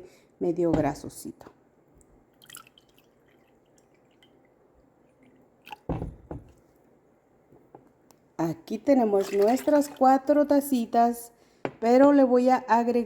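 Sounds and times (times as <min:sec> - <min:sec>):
dull knock: 0:05.9 - 0:06.6
handling water in pot: 0:08.8 - 0:10.3.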